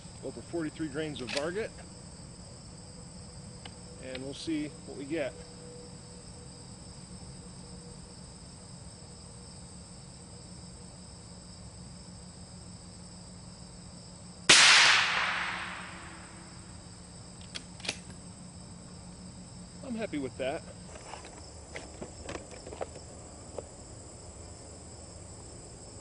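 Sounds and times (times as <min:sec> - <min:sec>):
crickets chirping: 0:00.0 - 0:26.0
suppressed rifle shot with echo: 0:14.5 - 0:16.5.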